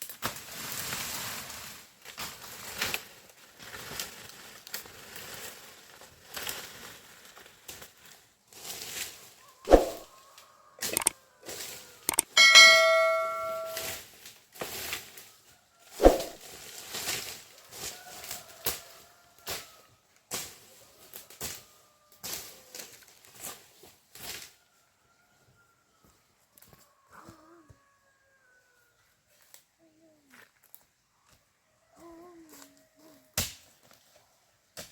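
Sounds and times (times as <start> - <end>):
metal object ringing: 12.1 - 13.9, 16.0 - 16.4.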